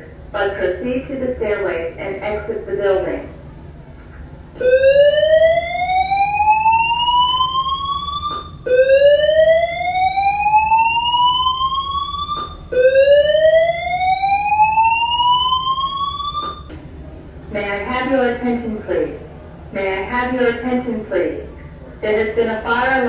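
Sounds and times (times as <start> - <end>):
fire alarm whoop tone: 4.6 - 16.7
alarm click: 4.6 - 16.8.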